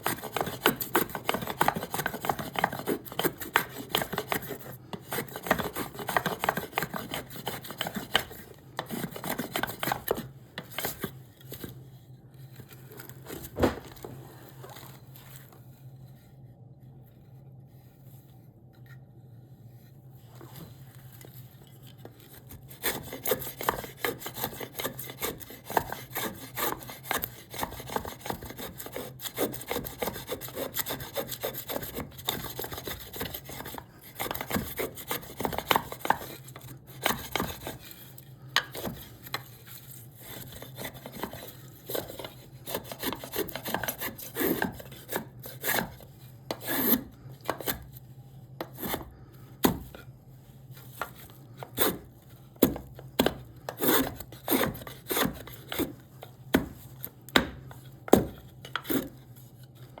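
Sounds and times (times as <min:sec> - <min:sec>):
hand tool cutting wood: 0:00.0 - 0:10.2, 0:22.7 - 0:38.0, 0:40.3 - 0:47.8, 0:50.9 - 0:59.2.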